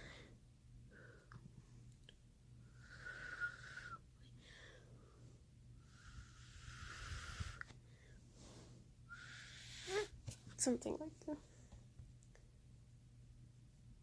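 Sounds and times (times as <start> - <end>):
breathy exhalations with whistling: 2.8 - 4.6, 9.1 - 10.2.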